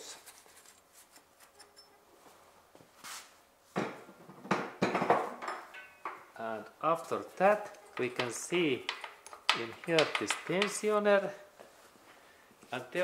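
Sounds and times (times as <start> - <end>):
metal tools clinking and clattering: 5.5 - 6.2.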